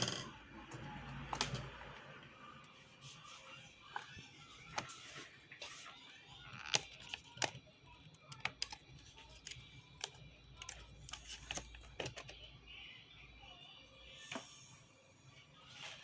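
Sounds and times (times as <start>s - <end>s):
laptop parts clicking and tapping: 6.4s - 12.4s.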